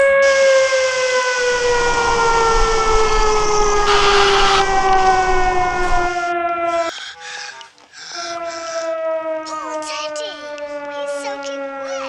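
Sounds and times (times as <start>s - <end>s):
civil defense siren winding down: 0.0s - 6.9s, 8.2s - 12.0s
steady hiss: 1.6s - 6.0s
short burst of noise: 3.0s - 6.1s.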